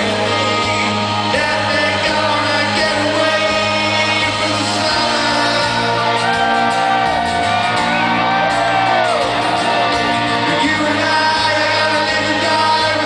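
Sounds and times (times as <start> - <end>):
live rock band playing: 0.0 - 13.0
audience shouting: 4.5 - 10.8.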